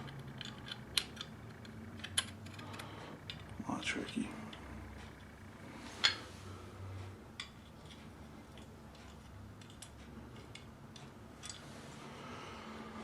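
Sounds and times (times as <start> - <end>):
small clicks of rifle parts: 0.0 - 3.5.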